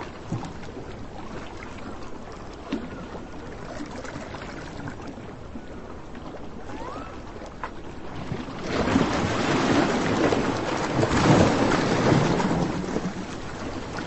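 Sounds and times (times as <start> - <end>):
surf washing: 0.0 - 14.0
wind: 0.0 - 14.0
short rising whistle: 6.7 - 7.2.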